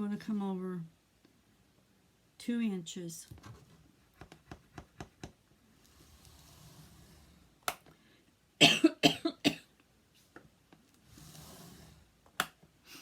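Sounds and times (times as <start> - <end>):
person coughing: 8.6 - 9.7.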